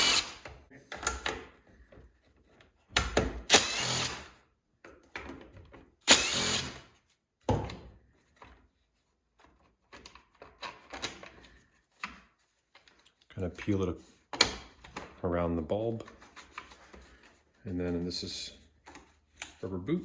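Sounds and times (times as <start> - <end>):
cordless drill-driver running: 0.0 - 0.4, 3.5 - 4.4, 6.0 - 6.9.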